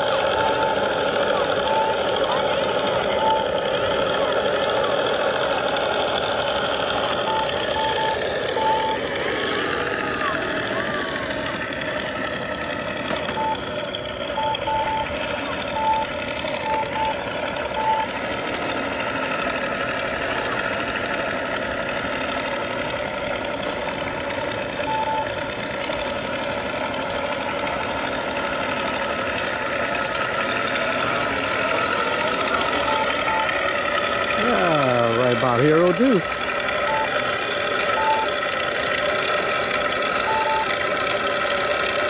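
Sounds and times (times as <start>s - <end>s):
electric motor and propeller: 0.0s - 42.0s
simulated radial engine sound: 0.0s - 42.0s
short electronic beeps: 0.3s - 0.9s, 1.6s - 2.1s, 3.1s - 3.6s, 7.2s - 9.0s, 13.3s - 13.6s, 14.4s - 15.1s, 15.7s - 17.2s, 17.8s - 18.1s, 24.8s - 25.3s, 32.8s - 33.6s, 36.8s - 37.2s, 37.9s - 38.3s, 40.2s - 40.7s.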